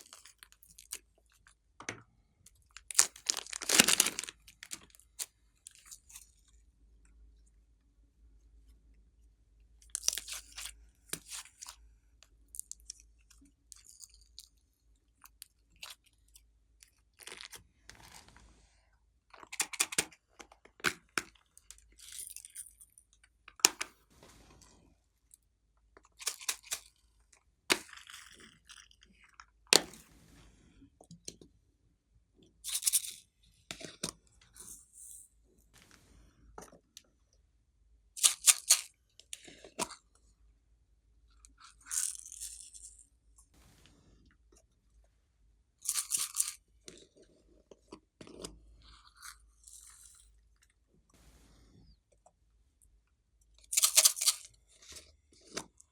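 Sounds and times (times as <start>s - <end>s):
slime squishing and crackling: 2.8s - 5.3s.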